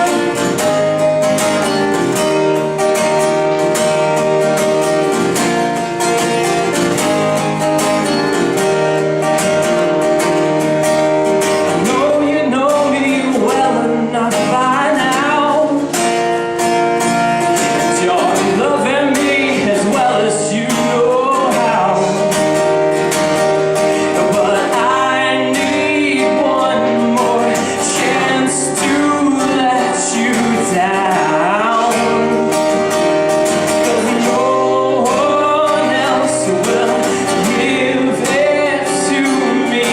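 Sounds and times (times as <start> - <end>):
strummed acoustic guitar: 0.0 - 39.9
person singing: 11.7 - 16.0, 17.6 - 22.5, 23.9 - 32.9, 33.5 - 39.9.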